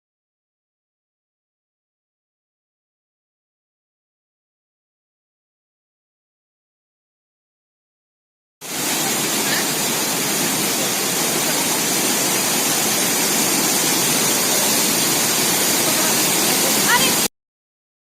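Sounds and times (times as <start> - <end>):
waterfall rushing: 8.6 - 17.3.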